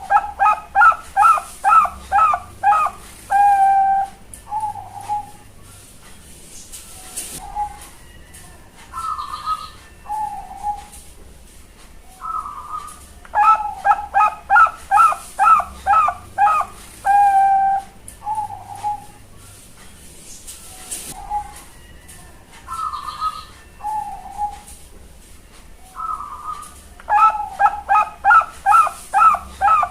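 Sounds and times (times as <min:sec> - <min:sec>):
dove cooing: 0:00.0 - 0:05.5, 0:07.4 - 0:08.0, 0:09.0 - 0:11.0, 0:12.2 - 0:19.2, 0:21.1 - 0:21.7, 0:22.7 - 0:24.8, 0:26.0 - 0:29.9.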